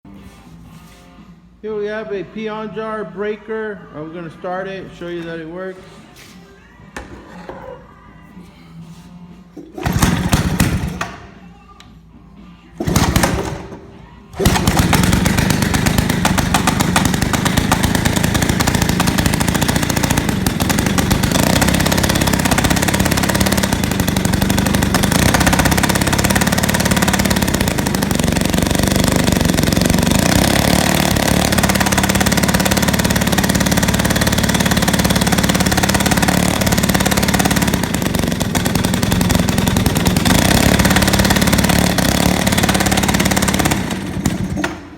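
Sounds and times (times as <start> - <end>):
breaker drill engine rattling: 9.8 - 11.4, 12.8 - 44.9.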